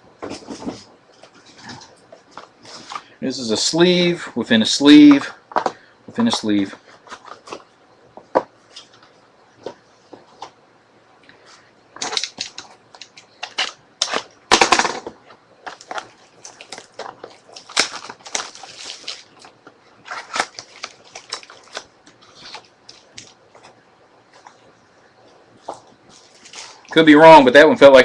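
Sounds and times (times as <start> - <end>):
packaging crinkling and rustling: 12.0 - 14.8, 15.6 - 24.6, 25.6 - 27.1
packaging tearing: 15.7 - 23.3.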